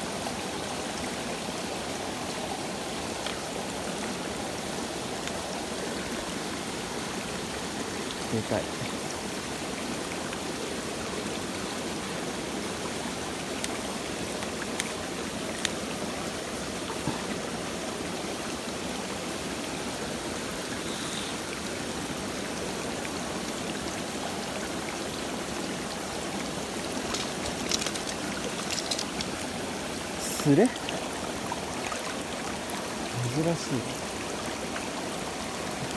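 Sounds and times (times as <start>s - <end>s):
stream water rushing: 0.0s - 35.9s
faint ticks: 26.8s - 29.5s.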